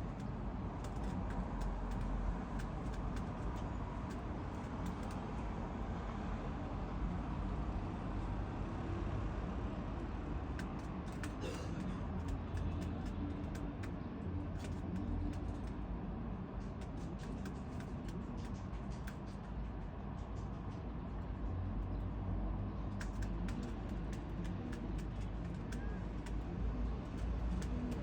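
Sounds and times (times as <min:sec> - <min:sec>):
light clicks and taps: 0:00.1 - 0:05.2, 0:10.5 - 0:15.8, 0:22.8 - 0:28.0.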